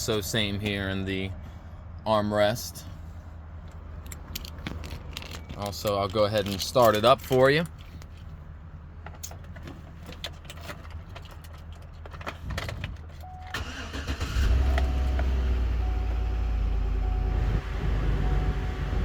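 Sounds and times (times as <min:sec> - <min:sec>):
engine cranking: 0:13.5 - 0:15.0.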